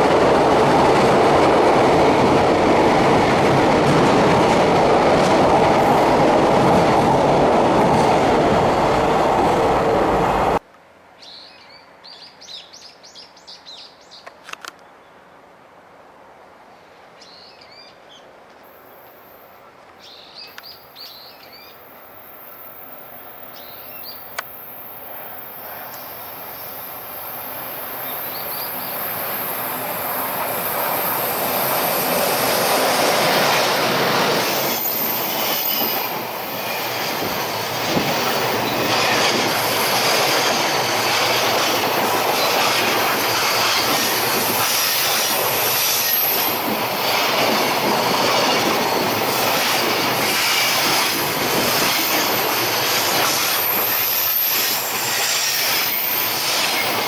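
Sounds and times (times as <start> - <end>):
freight train passing: 0.0 - 10.6, 18.7 - 57.0
faint high wheel squeal: 51.8 - 57.0.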